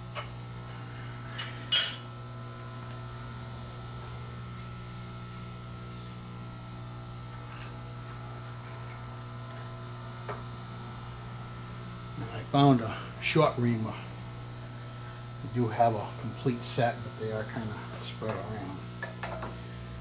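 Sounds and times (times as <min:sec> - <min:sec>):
electrical hum: 0:00.0 - 0:20.0
metal tools clinking: 0:01.4 - 0:02.1, 0:04.6 - 0:06.3.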